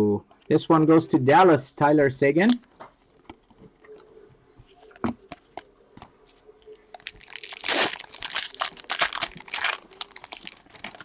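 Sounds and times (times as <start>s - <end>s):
card pack wrapper crinkling: 6.9s - 11.0s.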